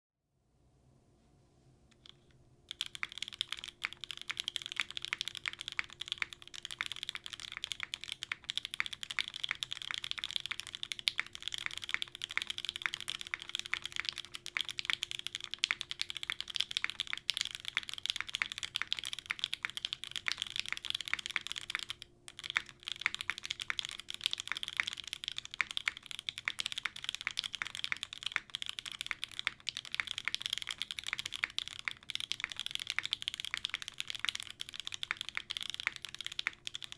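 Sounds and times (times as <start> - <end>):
mechanical keyboard typing: 2.0 - 36.9.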